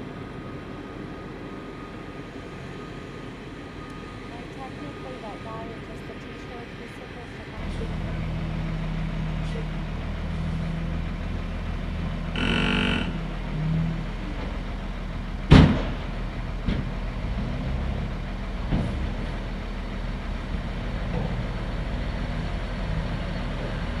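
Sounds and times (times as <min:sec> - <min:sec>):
heavy truck engines running: 0:00.0 - 0:24.0
short pitched blare: 0:12.4 - 0:13.5.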